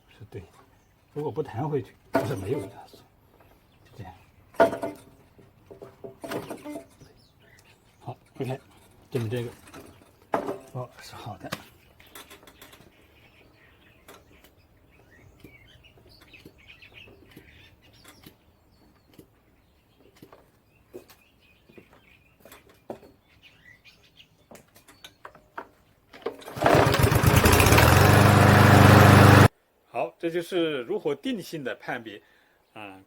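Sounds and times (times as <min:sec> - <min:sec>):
faint birds chirping: 0:00.0 - 0:26.2.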